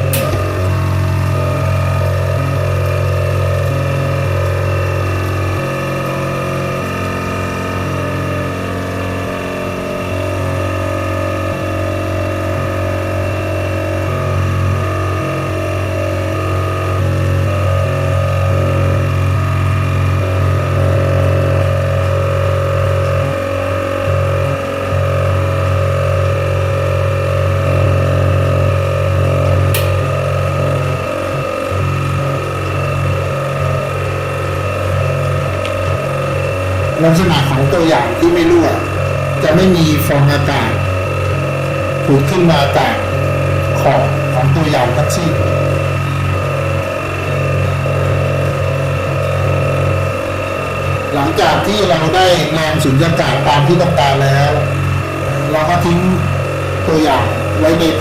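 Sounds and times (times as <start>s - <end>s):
vacuum pump humming: 0.0s - 58.0s
brief click: 29.7s - 30.0s.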